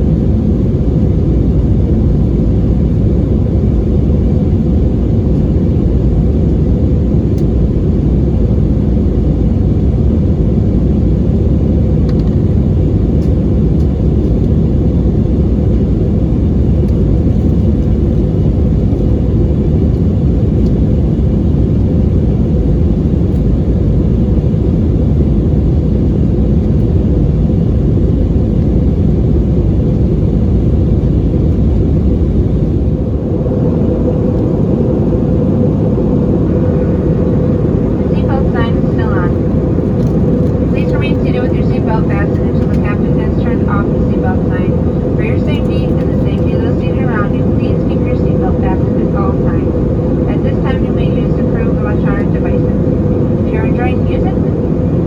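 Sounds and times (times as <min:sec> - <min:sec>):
constant droning tone: 0:00.0 - 0:55.0
jet engine cabin rumble: 0:00.0 - 0:55.0.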